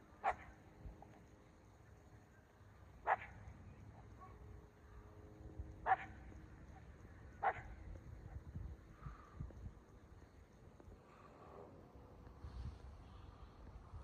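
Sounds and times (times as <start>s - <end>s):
dog barking: 0.2s - 0.5s, 3.0s - 3.4s, 5.8s - 6.2s, 7.4s - 7.7s.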